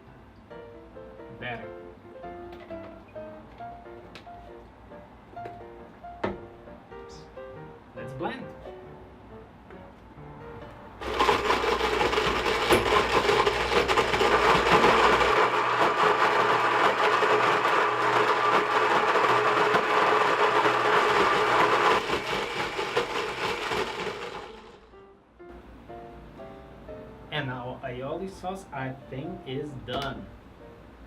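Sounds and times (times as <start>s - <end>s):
kitchen blender running: 11.0s - 24.9s.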